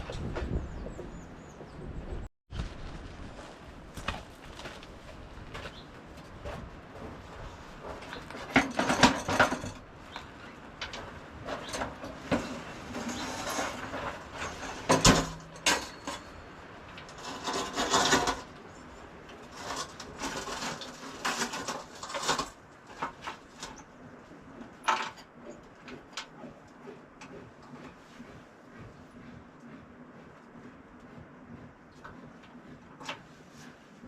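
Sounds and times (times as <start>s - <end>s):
tools scraping and rubbing: 7.4s - 29.8s.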